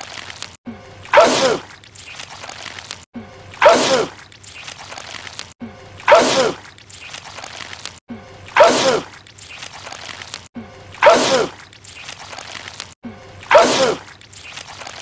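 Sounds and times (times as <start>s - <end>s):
man sneezing: 8.6s - 9.1s, 13.5s - 14.0s.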